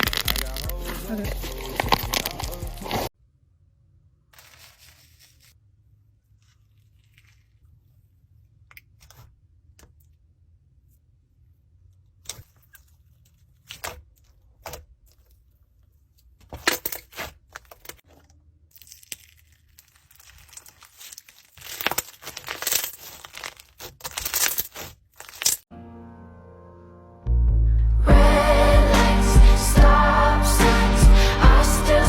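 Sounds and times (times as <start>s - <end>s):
slime squeezed with crackles: 0.0s - 0.7s, 18.7s - 25.6s.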